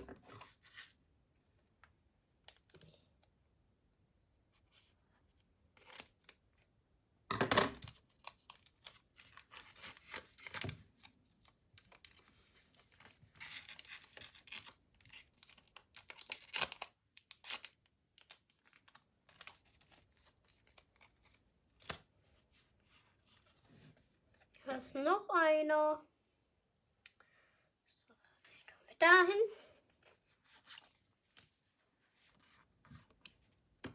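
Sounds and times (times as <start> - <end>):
packaging crinkling: 7.8 - 21.8
packaging tearing: 13.3 - 21.9.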